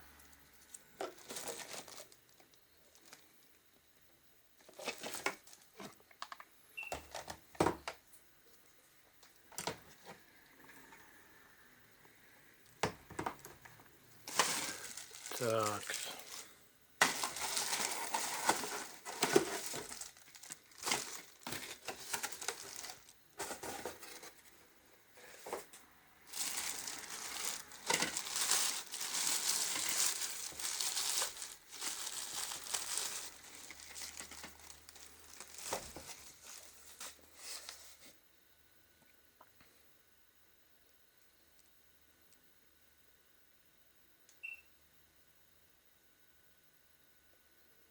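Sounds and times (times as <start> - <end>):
packaging crinkling and tearing: 0.7 - 3.2, 4.6 - 6.4, 14.2 - 24.4, 26.3 - 38.0.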